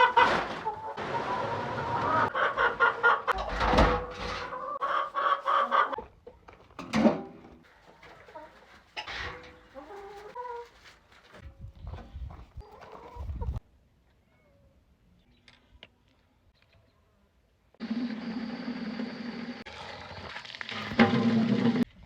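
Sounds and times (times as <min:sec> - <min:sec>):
hens clucking and squawking: 0:00.0 - 0:06.6, 0:07.6 - 0:11.0, 0:12.6 - 0:13.6.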